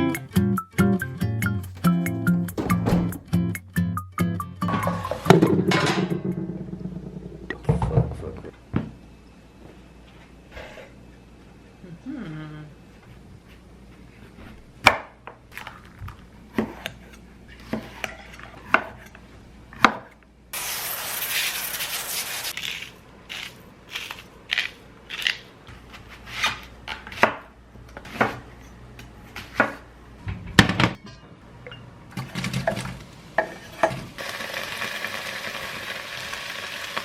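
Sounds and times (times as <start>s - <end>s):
items set down on hard surface: 1.7s - 3.4s.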